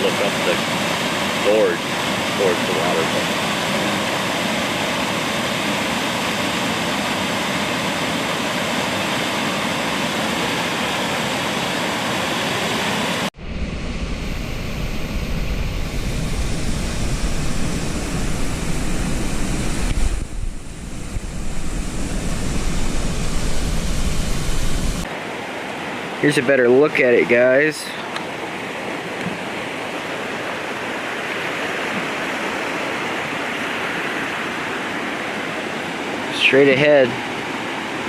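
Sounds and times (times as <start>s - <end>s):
waterfall roaring: 0.0s - 13.3s, 14.2s - 38.0s
wind buffeting microphone: 13.4s - 25.1s.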